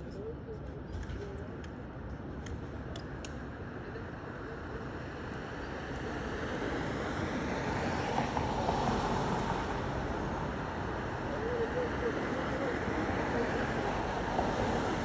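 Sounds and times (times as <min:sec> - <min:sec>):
street traffic noise: 0:00.0 - 0:15.0
vehicle passing: 0:05.2 - 0:15.0.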